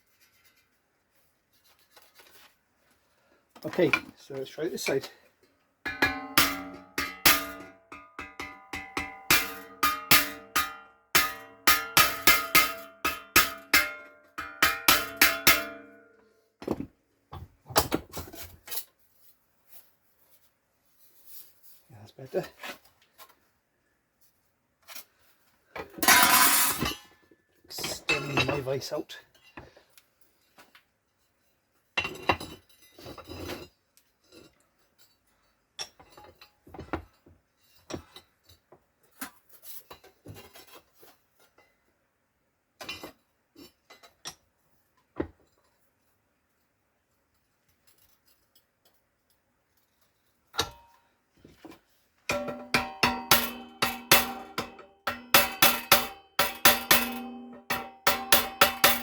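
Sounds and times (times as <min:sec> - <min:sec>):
metal clanks and knocks: 0:05.9 - 0:16.0, 0:25.8 - 0:27.2, 0:50.6 - 0:59.0.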